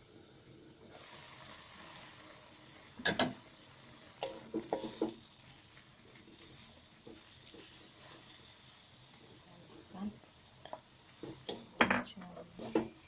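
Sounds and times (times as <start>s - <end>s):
oil sizzling in a pan: 0.0s - 13.0s
spatula knocking and scraping: 4.2s - 5.2s
utensil clattering on pan: 4.2s - 5.2s.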